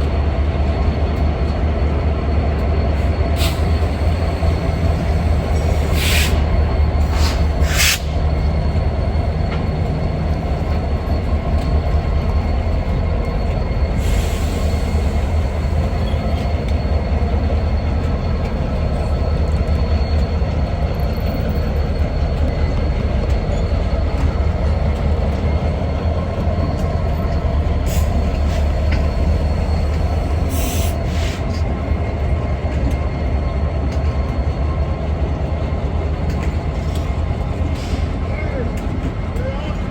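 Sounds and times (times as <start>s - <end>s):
train rumbling on track: 0.0s - 39.9s
high wheel squeal: 2.8s - 32.2s.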